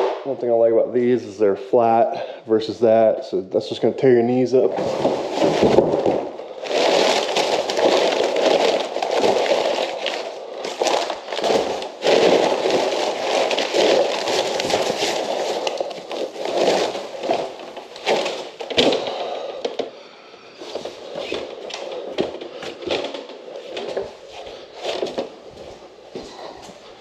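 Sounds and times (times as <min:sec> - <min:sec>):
packaging crinkling and rustling: 0:04.6 - 0:20.0, 0:20.6 - 0:25.7.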